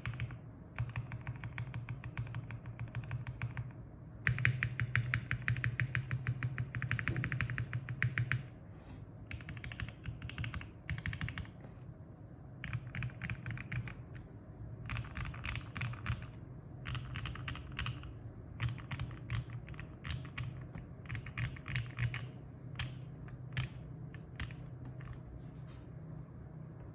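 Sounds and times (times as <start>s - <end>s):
mechanical keyboard typing: 0.0s - 8.5s, 9.3s - 11.6s, 12.6s - 25.2s.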